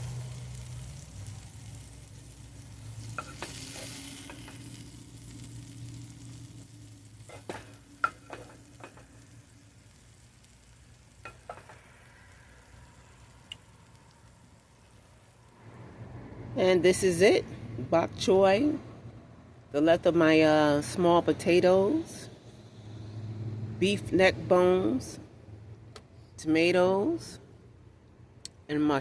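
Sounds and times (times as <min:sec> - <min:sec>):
food sizzling in a hot pan: 0:00.0 - 0:15.6
utensil scraping and clicking on pan: 0:02.8 - 0:05.0, 0:07.2 - 0:10.6, 0:11.2 - 0:12.0.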